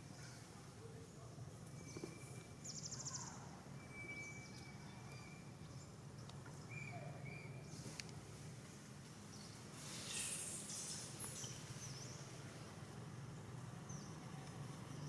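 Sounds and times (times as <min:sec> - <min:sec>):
birds chirping and whistling: 0:01.8 - 0:05.4.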